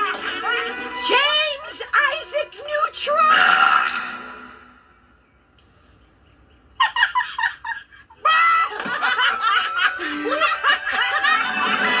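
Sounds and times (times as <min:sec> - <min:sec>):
music: 0:00.0 - 0:03.4, 0:09.0 - 0:12.0
cartoon characters laughing: 0:06.6 - 0:12.0.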